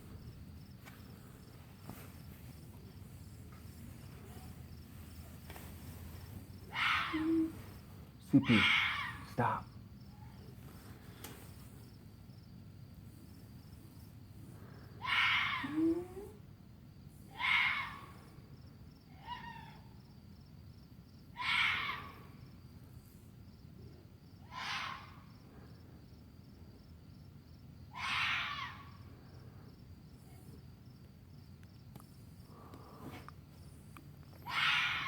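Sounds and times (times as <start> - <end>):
animal screeching calls: 6.6 - 7.7, 8.4 - 9.6, 15.0 - 16.2, 17.3 - 18.1, 21.4 - 22.3, 24.4 - 25.3, 27.9 - 29.0, 34.4 - 35.0.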